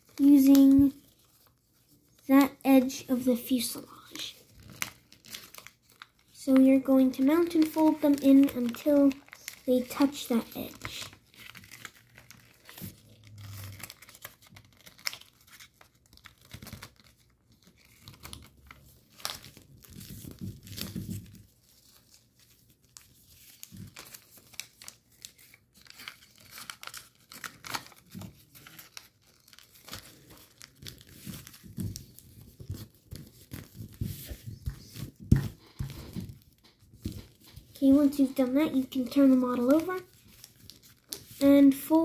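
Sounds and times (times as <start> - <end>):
paper being folded and creased: 0.0 - 42.0.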